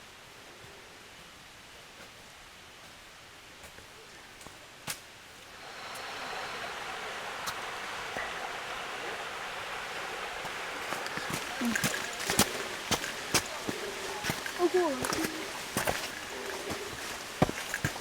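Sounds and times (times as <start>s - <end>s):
mountain stream rushing: 5.4s - 18.0s.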